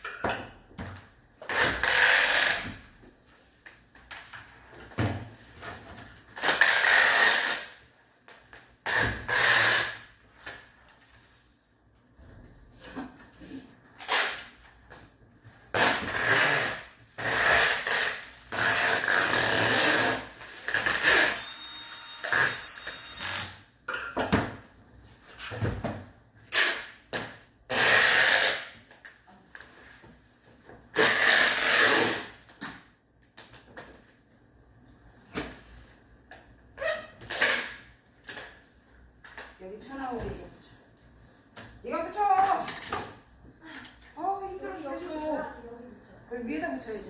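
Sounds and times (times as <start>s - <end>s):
small power tool running: 21.2s - 23.4s.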